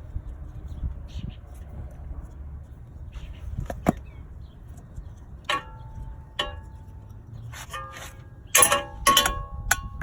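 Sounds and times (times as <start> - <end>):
metal tools clinking: 5.4 - 10.0.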